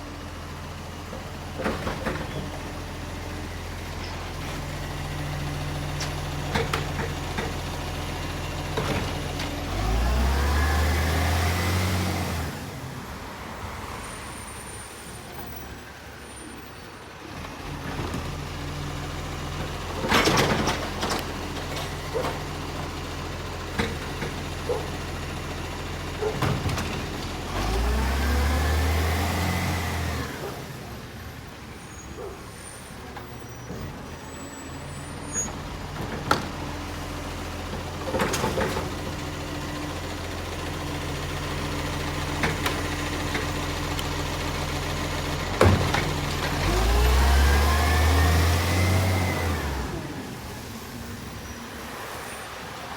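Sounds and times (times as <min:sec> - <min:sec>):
diesel truck engine idling and revving: 0:00.0 - 0:52.9
clanks and knocks: 0:45.6 - 0:46.6.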